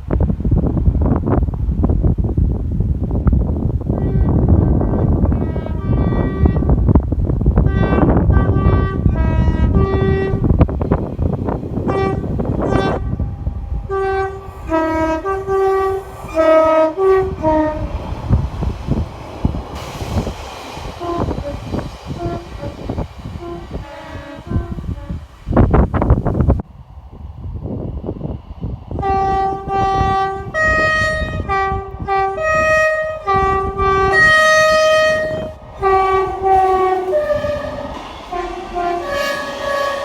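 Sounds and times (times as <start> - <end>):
train rumble: 0.0 - 40.0
train horn short blasts: 3.9 - 6.9, 7.6 - 10.6, 11.8 - 18.0, 21.0 - 21.6, 23.4 - 25.3, 29.0 - 40.0.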